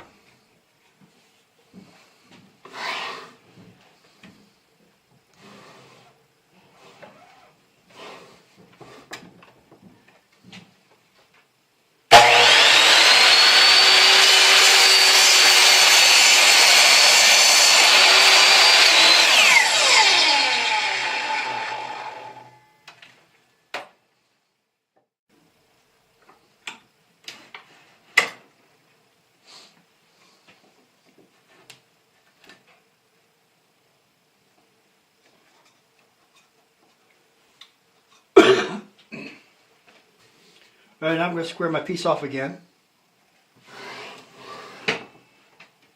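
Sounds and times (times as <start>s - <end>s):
miter saw cutting wood: 12.1s - 22.7s
saw blade spinning down: 12.1s - 22.7s.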